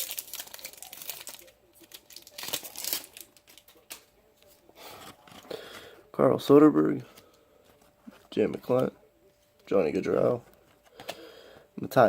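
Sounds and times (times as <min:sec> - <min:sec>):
wrapper crinkling: 0:00.0 - 0:04.1.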